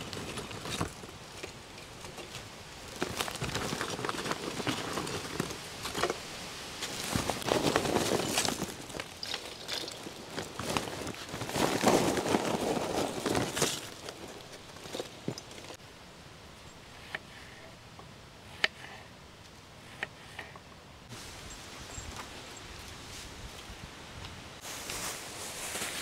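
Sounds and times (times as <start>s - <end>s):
rustling and crunching: 0.0s - 15.8s, 24.6s - 26.0s.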